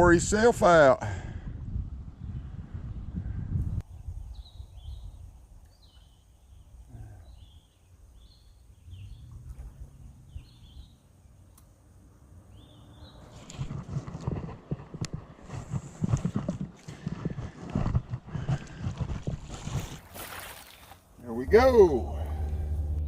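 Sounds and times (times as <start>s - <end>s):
songbird chirping: 3.8s - 13.8s
low microphone rumble: 21.4s - 23.0s.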